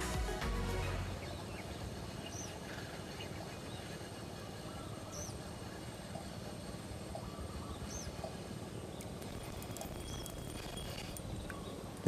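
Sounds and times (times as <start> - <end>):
bird chirping: 0.0 - 6.4, 7.0 - 12.0
low outdoor noise: 0.0 - 12.0.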